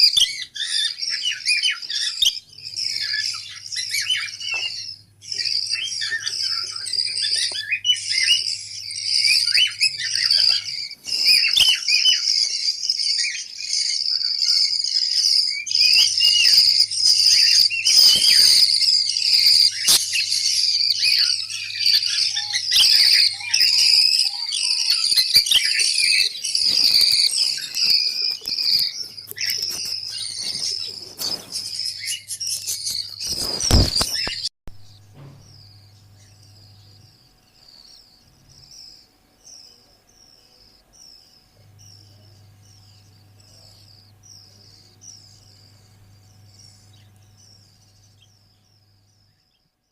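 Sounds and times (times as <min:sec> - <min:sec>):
budgerigars chirping: 0:00.0 - 0:49.7
loud thump: 0:35.1 - 0:35.6.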